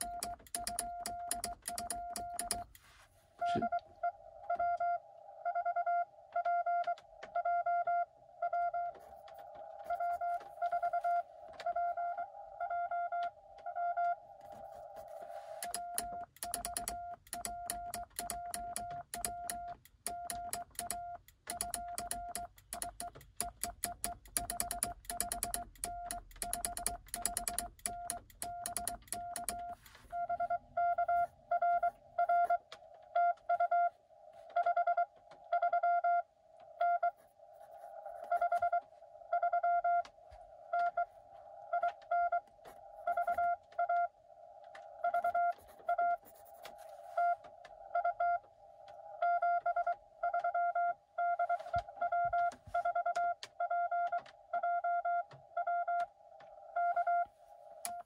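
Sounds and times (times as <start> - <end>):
morse code beeps: 0.0 - 2.8, 3.4 - 14.2, 14.8 - 32.6, 33.2 - 37.3, 43.0 - 44.1, 49.2 - 56.1, 56.7 - 57.3
morse key clicks: 0.0 - 2.8, 15.6 - 29.8.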